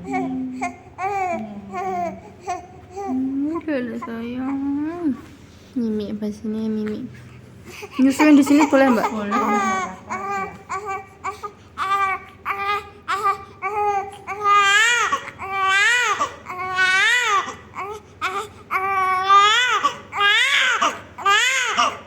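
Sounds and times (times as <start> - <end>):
newborn baby crying: 0.0 - 3.3, 7.8 - 22.0.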